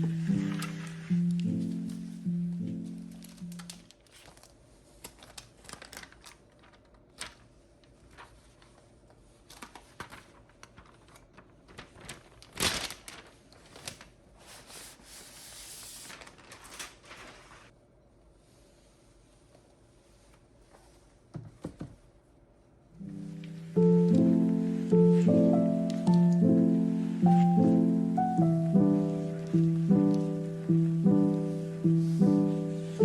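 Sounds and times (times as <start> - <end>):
papery rustling: 0.0 - 17.7, 23.0 - 33.0.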